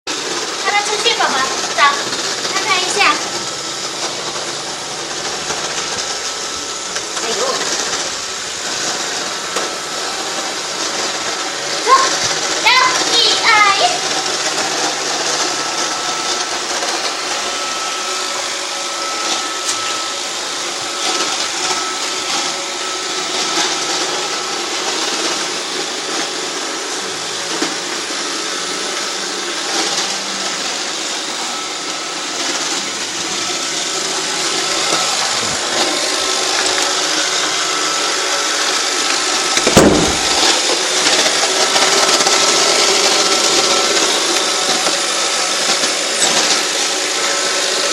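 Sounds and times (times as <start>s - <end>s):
robot vacuum whirring: 0.1s - 47.9s
knock: 39.7s - 40.3s.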